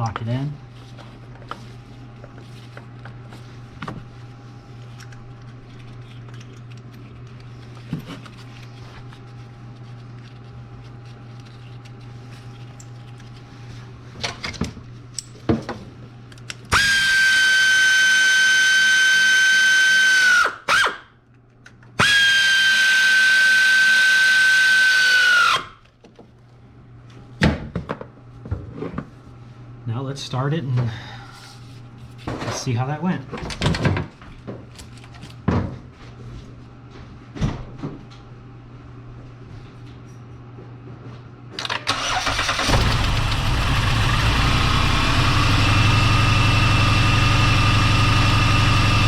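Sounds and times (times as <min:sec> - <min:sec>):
cordless drill whining: 0:16.7 - 0:21.0, 0:22.0 - 0:25.7.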